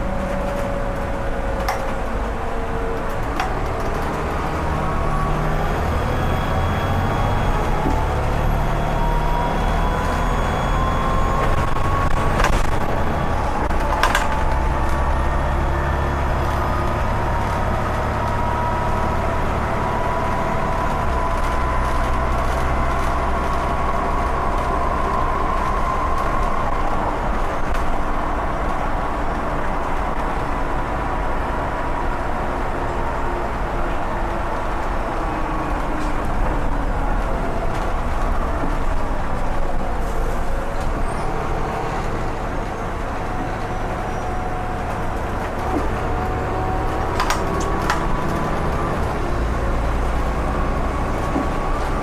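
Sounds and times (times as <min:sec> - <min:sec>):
diesel bus engine rumble: 0:00.0 - 0:52.0.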